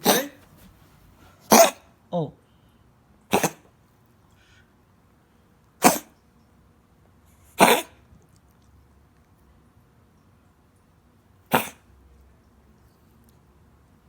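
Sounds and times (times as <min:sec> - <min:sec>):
dog coughing: 0:00.0 - 0:00.6, 0:01.4 - 0:01.9, 0:03.3 - 0:03.7, 0:05.8 - 0:06.2, 0:07.6 - 0:08.0, 0:11.5 - 0:11.9.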